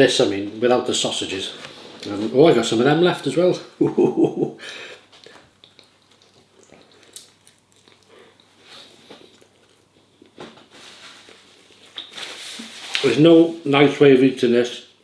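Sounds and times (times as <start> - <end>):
man chewing: 4.6 - 10.4.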